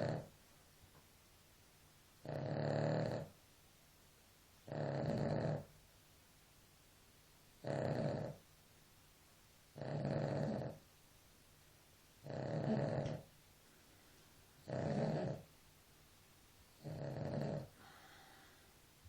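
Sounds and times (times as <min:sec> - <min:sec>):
dog snoring: 0:00.0 - 0:00.4, 0:02.2 - 0:03.4, 0:04.6 - 0:05.7, 0:07.6 - 0:08.4, 0:09.8 - 0:10.8, 0:12.2 - 0:13.3, 0:14.6 - 0:15.5, 0:16.8 - 0:18.5.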